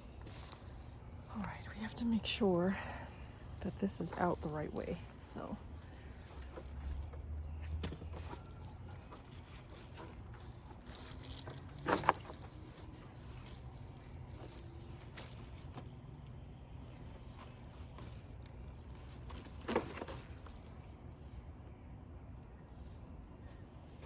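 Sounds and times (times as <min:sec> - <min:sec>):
handling rustles and clicks: 0:00.0 - 0:01.7, 0:03.6 - 0:21.0.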